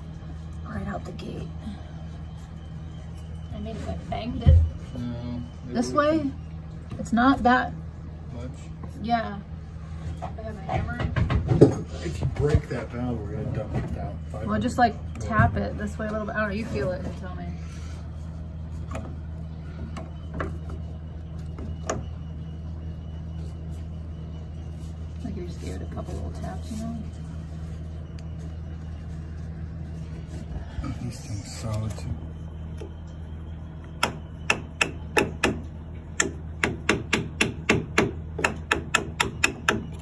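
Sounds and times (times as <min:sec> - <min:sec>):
steady low hum: 0:00.0 - 0:40.0
hammer tapping: 0:34.0 - 0:40.0.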